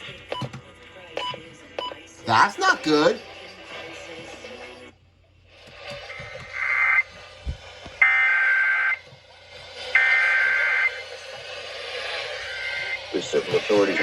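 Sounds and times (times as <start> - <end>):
shrill digital data tones: 9.9 - 14.0.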